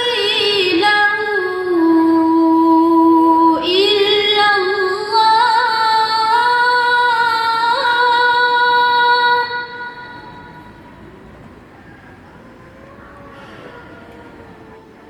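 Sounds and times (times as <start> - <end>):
boy chanting melodically: 0.0 - 10.8.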